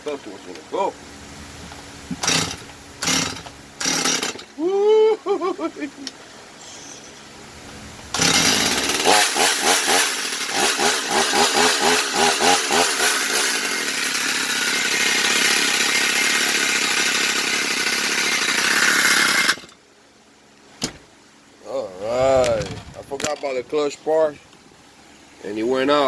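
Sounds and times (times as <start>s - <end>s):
chainsaw revving: 2.1s - 4.5s, 8.1s - 19.8s.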